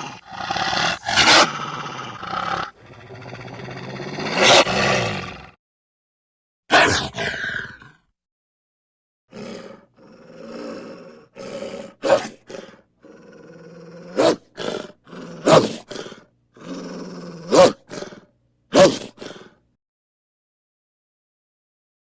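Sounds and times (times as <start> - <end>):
wolf growling: 0.0 - 5.6, 9.3 - 18.3
wolf snarling: 0.0 - 5.6, 9.3 - 19.6.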